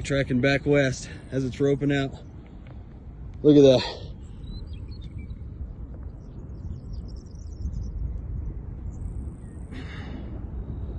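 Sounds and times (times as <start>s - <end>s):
wind rumbling: 0.0s - 10.9s
faint bird chirps: 3.6s - 10.1s.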